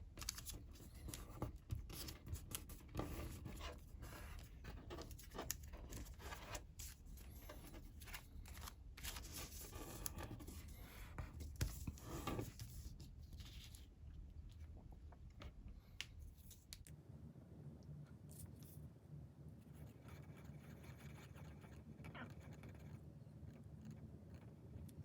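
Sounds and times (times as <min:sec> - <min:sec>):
paper crinkling and rustling: 0:04.3 - 0:13.9.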